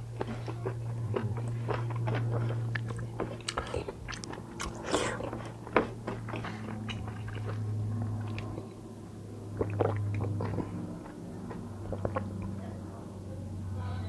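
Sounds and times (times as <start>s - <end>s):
person chewing food: 0.0s - 12.6s
steady low hum: 0.0s - 14.0s
wet mouth clicks: 1.2s - 5.5s, 8.2s - 8.8s, 9.6s - 12.6s.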